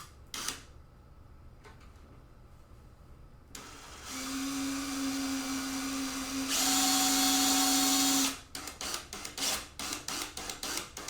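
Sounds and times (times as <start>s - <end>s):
power drill running: 3.6s - 10.8s.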